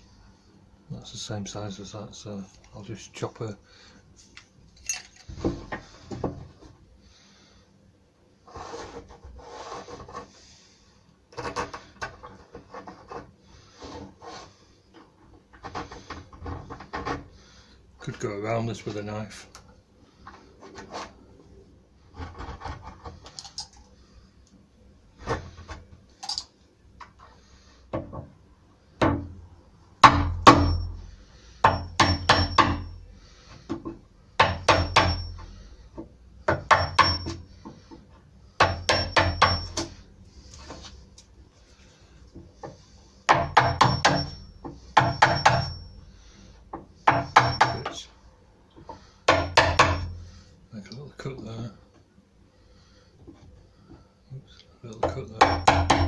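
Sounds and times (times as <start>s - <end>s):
chisel paring wood: 30.0s - 30.8s, 31.6s - 33.0s, 33.7s - 35.5s, 36.4s - 37.4s, 38.6s - 39.9s, 43.3s - 45.8s, 47.1s - 48.0s, 49.3s - 50.2s, 55.0s - 56.0s.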